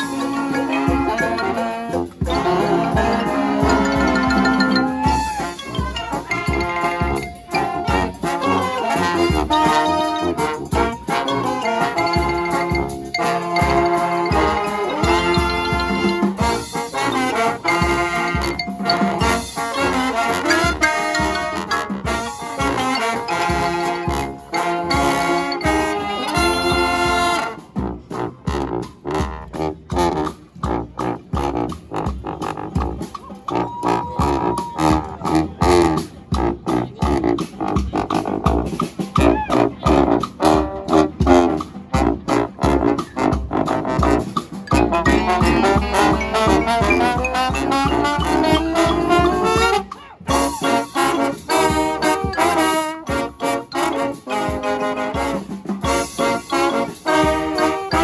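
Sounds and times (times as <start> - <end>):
brass band playing: 0.0 - 58.0
bass drum beat: 0.9 - 8.2, 43.5 - 50.7.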